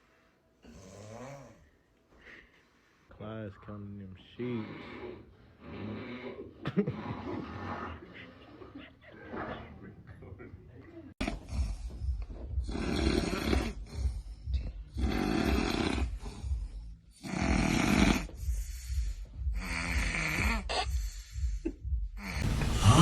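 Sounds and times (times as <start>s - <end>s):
quiet breaths: 0.0s - 23.0s
heavy snoring: 0.6s - 1.6s, 4.4s - 8.2s, 11.2s - 18.6s, 19.6s - 20.7s, 22.2s - 23.0s.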